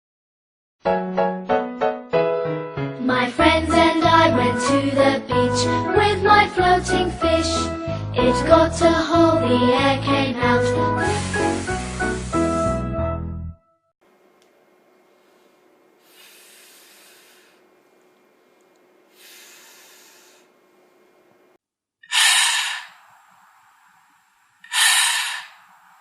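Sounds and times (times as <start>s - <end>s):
person making f hisses: 11.0s - 12.7s, 16.0s - 17.6s, 19.1s - 20.6s, 22.1s - 26.0s.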